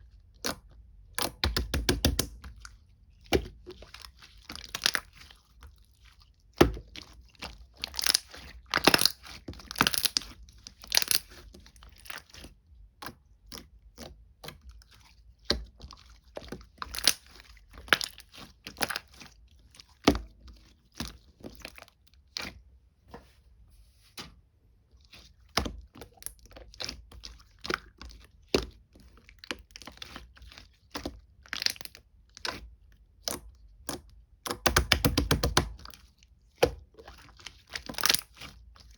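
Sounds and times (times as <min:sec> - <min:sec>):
slime crackling and popping: 0:07.8 - 0:11.4, 0:37.8 - 0:38.4.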